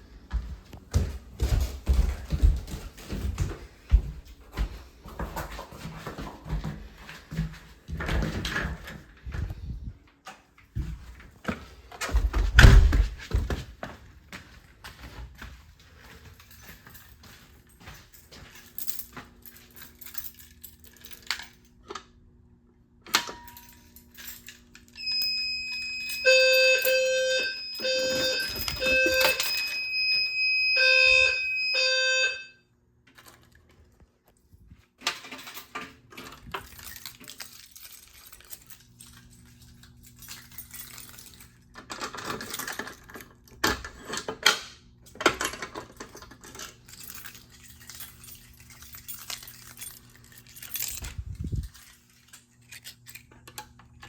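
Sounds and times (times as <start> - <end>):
pulsing low fire alarm tone: 24.9 - 32.6
shrill high alarm tone: 24.9 - 32.6.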